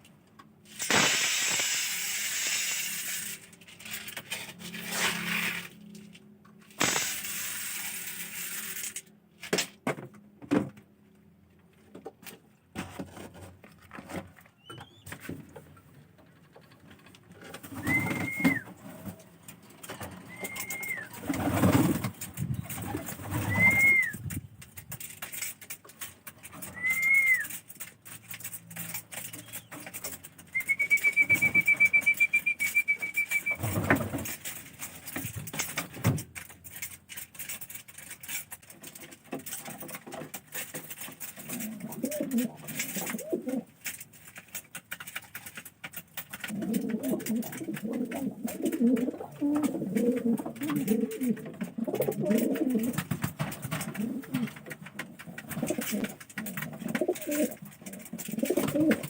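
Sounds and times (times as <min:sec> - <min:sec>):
pigeons cooing: 0:17.6 - 0:19.1, 0:20.1 - 0:24.3, 0:30.6 - 0:33.8, 0:41.4 - 0:43.7, 0:46.4 - 0:59.0
high whistled notes: 0:17.8 - 0:18.7, 0:20.3 - 0:21.2, 0:23.4 - 0:24.2, 0:30.6 - 0:33.6.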